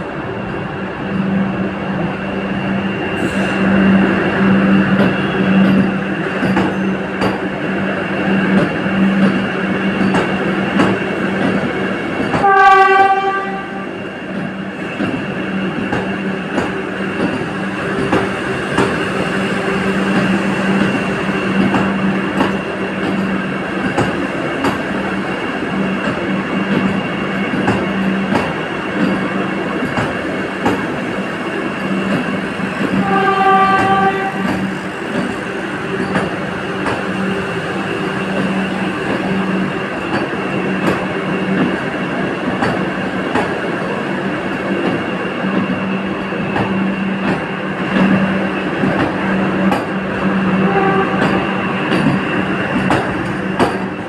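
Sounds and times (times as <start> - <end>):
electric train rumbling: 0.0 - 54.0
train horn blast: 12.4 - 13.9, 33.0 - 34.6, 50.6 - 51.9.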